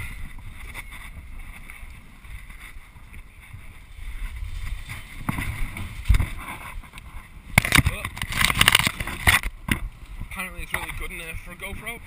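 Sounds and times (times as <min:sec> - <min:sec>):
wind buffeting microphone: 0:00.0 - 0:12.0
knocks and rustles: 0:04.5 - 0:09.9.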